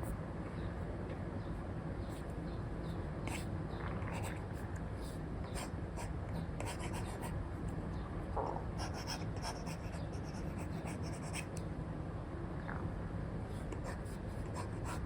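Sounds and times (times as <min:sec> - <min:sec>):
steady low hum: 0:00.0 - 0:15.0
stylus scratching on screen: 0:08.8 - 0:11.5.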